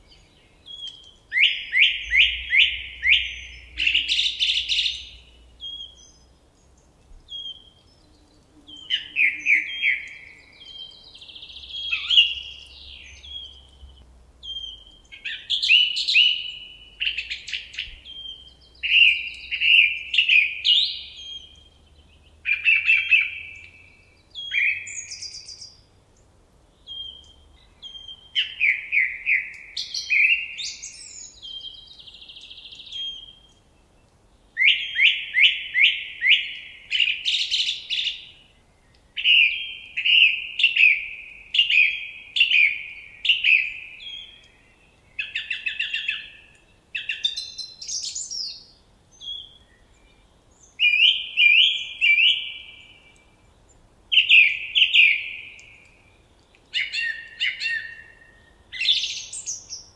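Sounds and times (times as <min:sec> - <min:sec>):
songbird whistling downward notes: 0:00.0 - 0:06.3, 0:07.3 - 0:21.7, 0:26.9 - 0:33.6, 0:47.0 - 0:53.4, 0:54.1 - 0:59.9.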